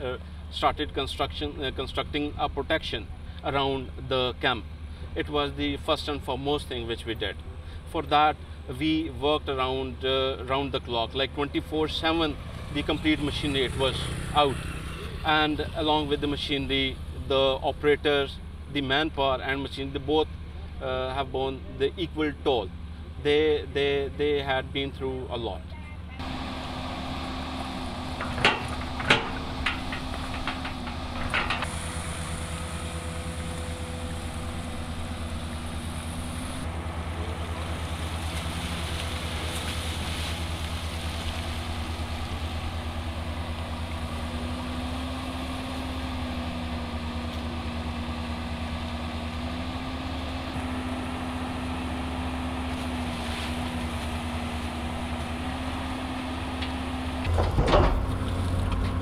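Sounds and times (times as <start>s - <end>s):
heavy machinery engine running: 26.0s - 59.0s
sharp knocks: 28.2s - 31.7s.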